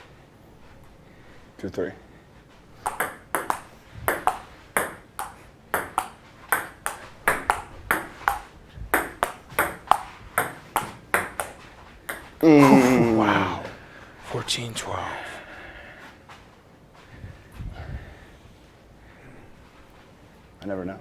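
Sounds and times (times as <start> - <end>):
ping pong ball clicking: 2.8 - 12.4.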